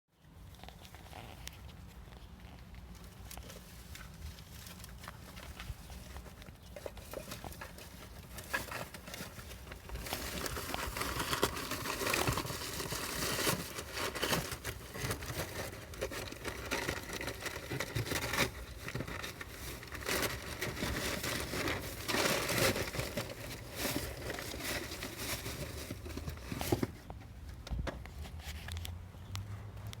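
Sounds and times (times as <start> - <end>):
trash bags rustling and tearing: 6.8 - 27.0.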